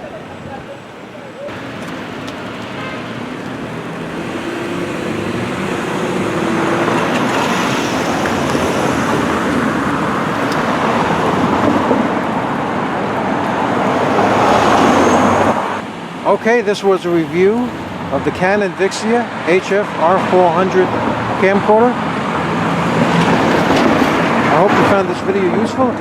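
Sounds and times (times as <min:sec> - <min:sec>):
steady rushing noise: 0:01.5 - 0:16.8.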